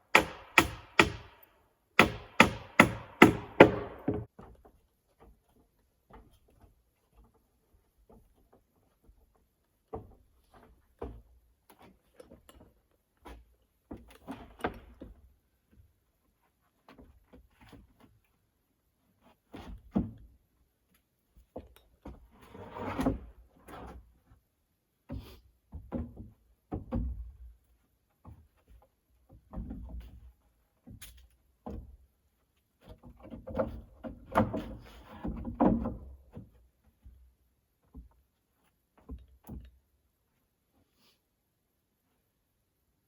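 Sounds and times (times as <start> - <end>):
wooden knocks and bumps: 2.0 - 7.4, 25.1 - 31.0, 31.6 - 32.1, 32.8 - 38.2
wood scraping: 22.2 - 24.1.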